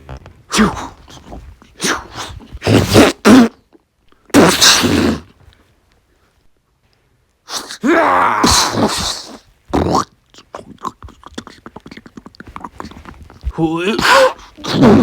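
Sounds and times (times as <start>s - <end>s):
mouth punch and grunt noises: 0.5s - 3.6s, 4.3s - 5.4s, 7.5s - 15.0s.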